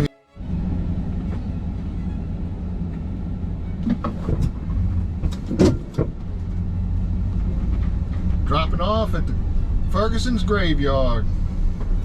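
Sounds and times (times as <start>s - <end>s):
vehicle rumble from inside cab: 0.0s - 12.0s
knocks and rattles: 3.6s - 8.5s.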